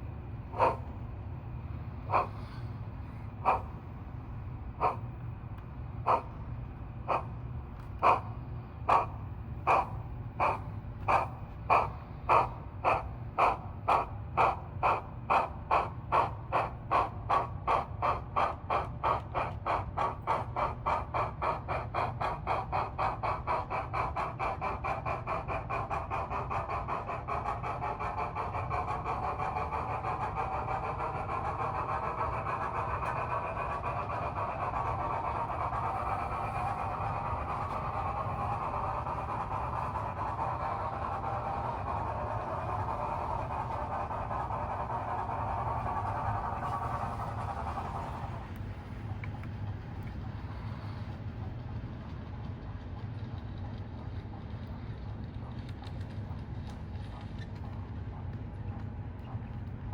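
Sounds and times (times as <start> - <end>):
model train steam chuffs: 0.0 - 59.9.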